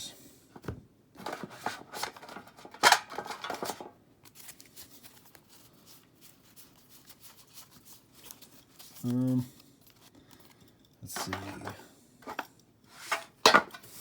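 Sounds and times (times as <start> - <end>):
cards rustling and clicking: 1.3 - 12.4.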